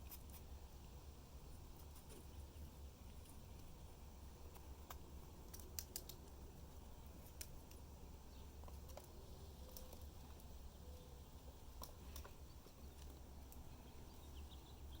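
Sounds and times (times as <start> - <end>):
low steady hum: 0.0 - 15.0
faint sharp clicks: 4.5 - 6.4.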